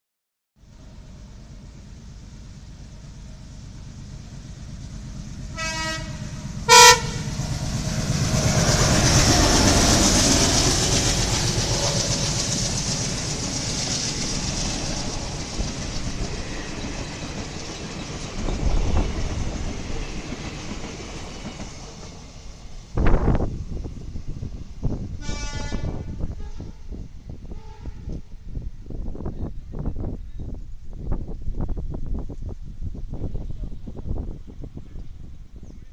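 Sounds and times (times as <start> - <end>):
train passing: 0.6 - 35.9
locomotive dual-tone horn: 5.5 - 7.4, 25.2 - 26.8, 27.5 - 28.2.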